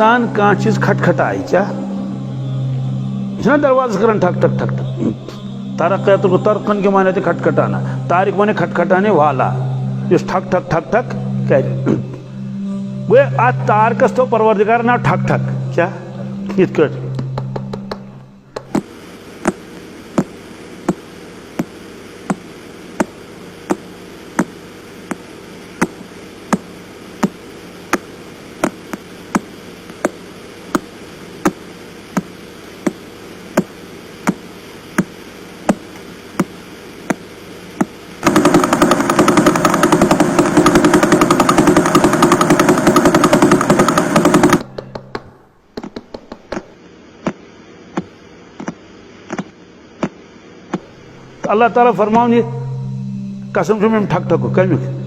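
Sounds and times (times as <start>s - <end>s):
sharp regular ticks: 18.6s - 44.6s
steady hiss: 18.7s - 44.3s
dense rapid rattling: 38.2s - 44.6s.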